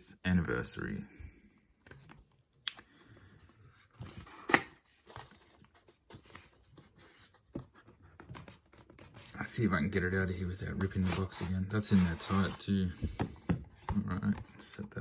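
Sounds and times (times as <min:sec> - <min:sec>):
cardboard box scrapes and rustles: 0:11.0 - 0:12.8.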